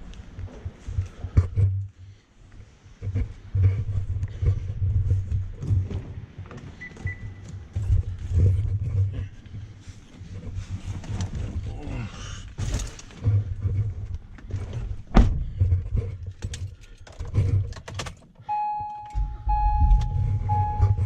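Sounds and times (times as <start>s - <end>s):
electronic chime beeping: 18.5s - 21.0s.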